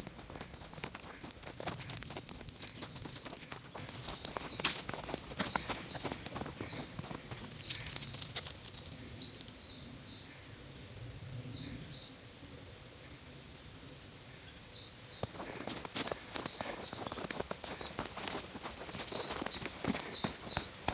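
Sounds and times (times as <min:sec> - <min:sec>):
footsteps crunching in snow: 0:00.0 - 0:08.7, 0:15.1 - 0:20.9.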